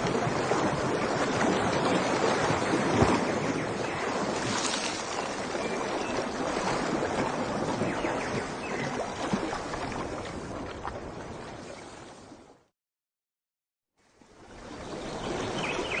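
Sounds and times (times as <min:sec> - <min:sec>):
rushing water: 0:00.0 - 0:12.6.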